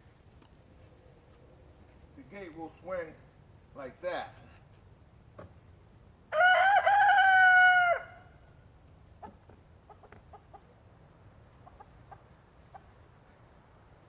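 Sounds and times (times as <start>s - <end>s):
rooster crowing: 6.3s - 8.4s.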